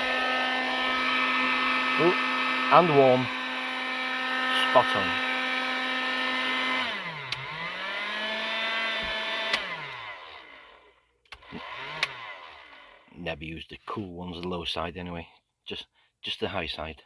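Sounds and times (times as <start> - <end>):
heat gun fan motor whine: 0.0 - 13.1.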